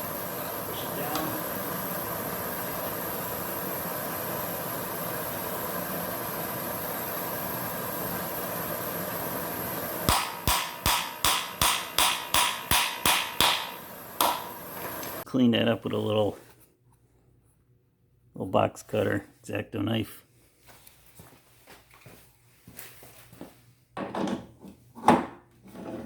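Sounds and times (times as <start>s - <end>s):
heat gun blowing: 0.0s - 15.3s
hammer tapping metal: 10.1s - 15.2s.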